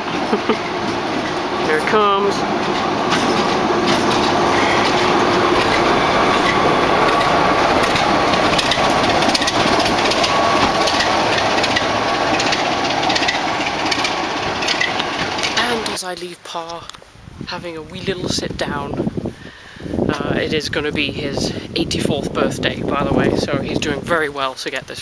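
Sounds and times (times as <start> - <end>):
diesel train rumbling past: 0.0 - 16.1, 17.5 - 24.2
wheels clicking over rail joints: 0.0 - 19.3, 20.0 - 25.0.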